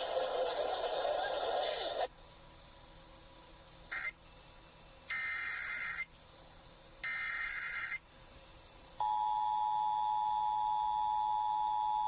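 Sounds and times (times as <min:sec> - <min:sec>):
buzzing data tone bursts: 0:07.0 - 0:08.0.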